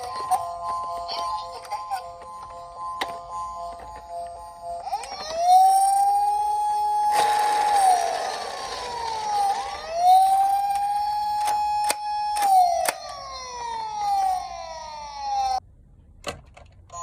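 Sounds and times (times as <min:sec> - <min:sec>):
police siren wailing: 0:04.8 - 0:15.6.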